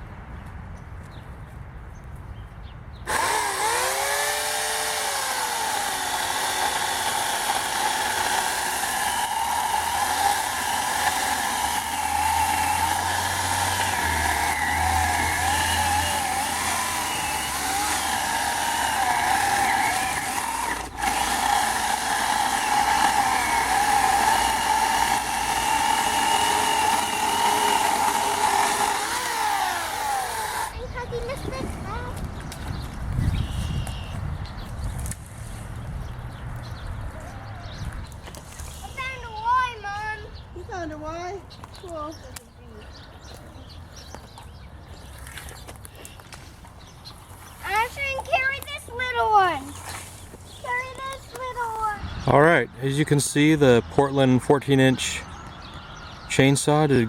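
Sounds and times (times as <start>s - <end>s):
electric chainsaw cutting wood: 3.1s - 30.9s.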